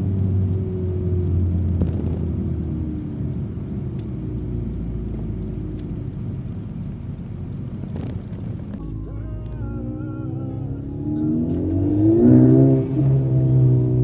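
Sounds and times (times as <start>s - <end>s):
car engine through exhaust: 0.0s - 14.0s
deep low drone: 8.8s - 14.0s.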